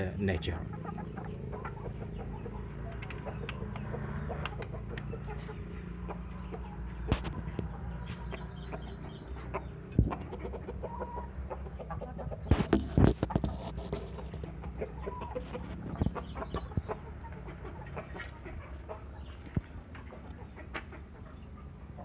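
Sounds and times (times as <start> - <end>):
chickens clucking: 0.0 - 22.0
chickens pecking clicks: 2.9 - 5.3.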